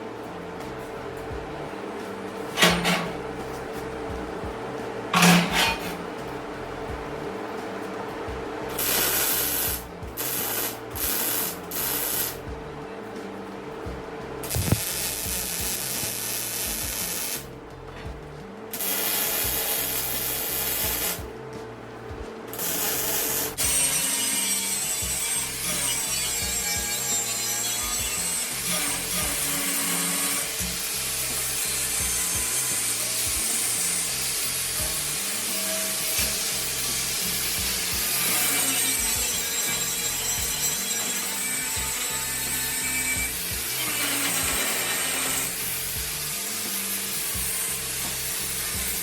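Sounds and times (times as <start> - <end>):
angle grinder grinding metal: 5.2 - 6.0, 8.7 - 12.5, 14.4 - 17.5, 18.7 - 21.3, 22.5 - 49.0.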